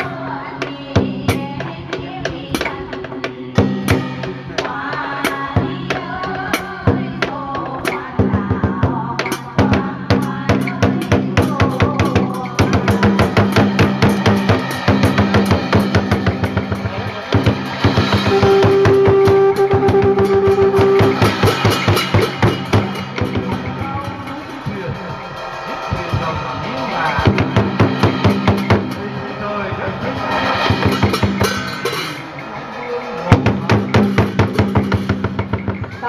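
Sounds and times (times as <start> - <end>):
fast dense drumming: 0.0 - 36.0
melody instruments: 18.2 - 27.8.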